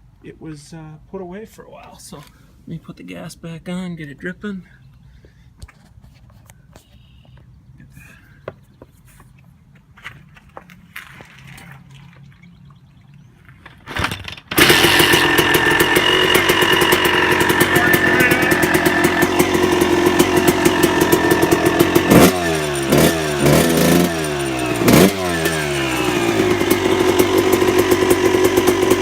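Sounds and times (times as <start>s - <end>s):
motorcycle engine kick-started: 13.6s - 29.0s
two-stroke engine idling and revving: 14.2s - 29.0s.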